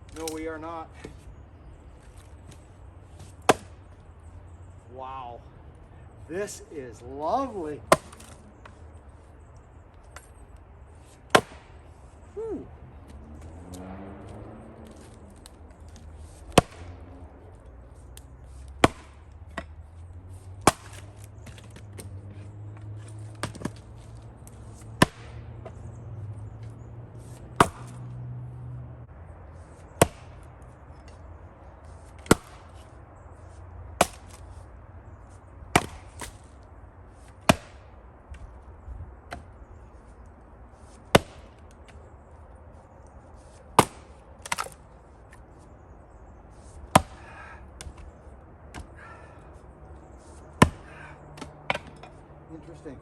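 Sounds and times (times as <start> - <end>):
axe chopping firewood: 0.1 - 1.2, 3.2 - 4.0, 7.4 - 8.8, 11.2 - 11.9, 13.0 - 17.2, 18.1 - 28.3, 29.5 - 33.0, 33.9 - 34.5, 35.6 - 36.6, 37.3 - 38.6, 39.2 - 39.6, 40.8 - 42.1, 43.6 - 45.5, 46.8 - 49.3, 50.2 - 52.2.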